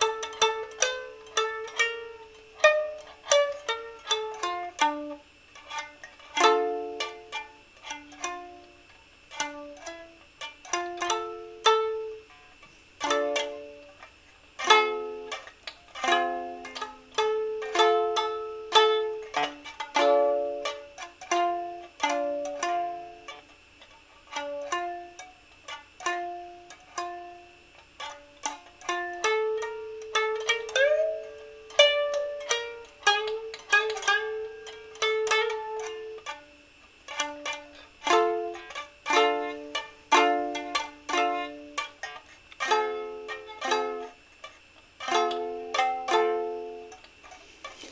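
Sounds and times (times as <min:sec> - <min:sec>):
plucked string instrument: 0:00.0 - 0:47.9.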